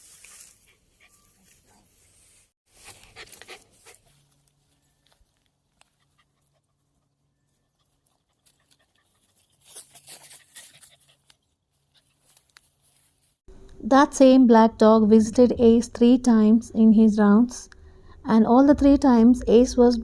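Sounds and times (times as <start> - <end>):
dog panting: 2.8 - 4.2.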